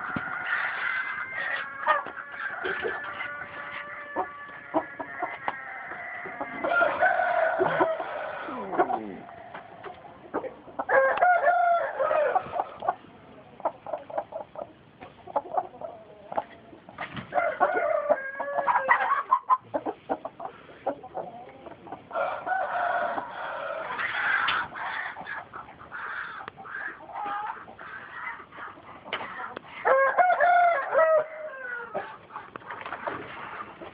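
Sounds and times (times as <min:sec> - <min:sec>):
rooster crowing: 0:00.0 - 0:09.8, 0:10.9 - 0:12.5, 0:17.3 - 0:19.0, 0:22.1 - 0:24.0, 0:29.9 - 0:32.0
chickens clucking: 0:00.0 - 0:33.9.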